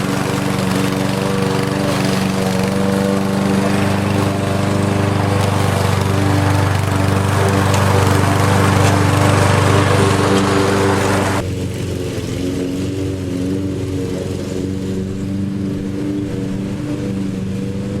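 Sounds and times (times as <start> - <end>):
loud rushing noise: 0.0 - 11.4
lawn mower engine running: 0.0 - 18.0.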